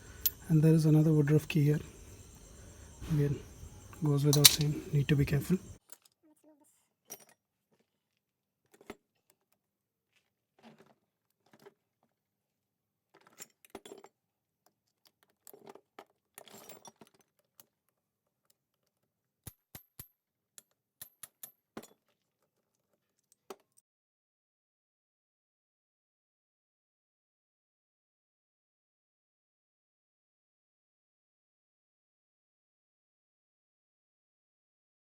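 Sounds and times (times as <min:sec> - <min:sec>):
metallic clicks of hand tools: 0:00.2 - 0:00.4, 0:04.2 - 0:05.1
sharp ringing clicks: 0:03.9 - 0:05.6.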